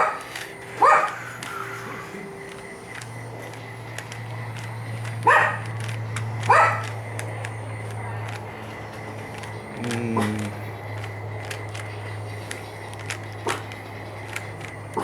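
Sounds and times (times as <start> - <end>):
dog barking: 0.0 - 1.4, 5.2 - 5.7, 6.4 - 7.0, 13.4 - 13.6
steady low hum: 0.0 - 15.0.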